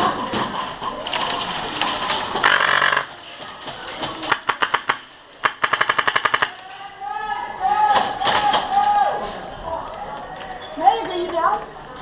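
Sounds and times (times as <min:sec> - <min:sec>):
airsoft gun firing bursts: 0:02.4 - 0:03.1, 0:04.3 - 0:06.6.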